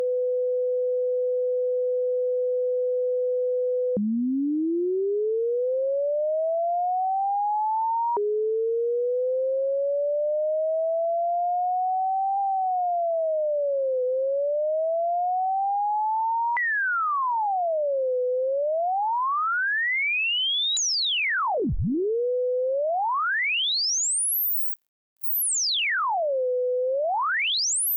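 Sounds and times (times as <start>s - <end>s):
gliding sine tone: 20.8s - 22.3s, 23.9s - 25.9s, 27.4s - 27.9s.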